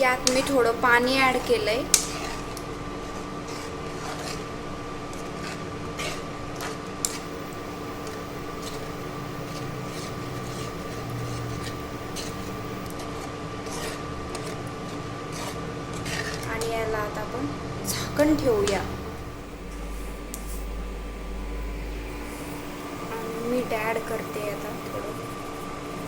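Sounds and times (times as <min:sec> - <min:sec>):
spatula scraping paste in a pan: 0:00.0 - 0:04.6, 0:05.2 - 0:12.9, 0:13.6 - 0:16.5
steady hum: 0:00.0 - 0:26.0.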